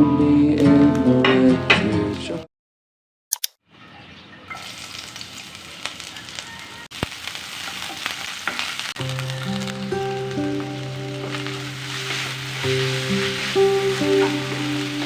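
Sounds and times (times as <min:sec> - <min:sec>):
food sizzling in a hot pan: 0:04.5 - 0:15.0
soft music with held notes: 0:09.0 - 0:15.0.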